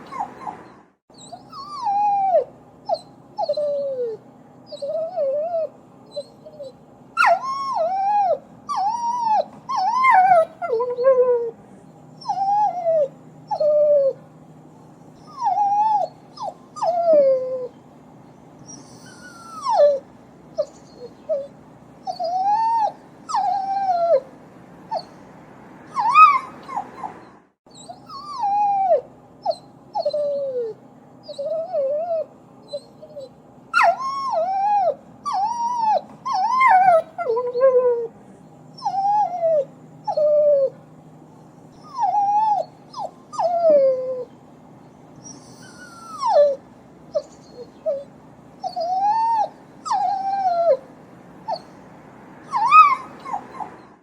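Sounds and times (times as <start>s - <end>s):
dog whining and whimpering: 0.0s - 17.8s, 18.6s - 25.3s, 25.9s - 40.9s, 41.6s - 44.4s, 45.2s - 54.0s.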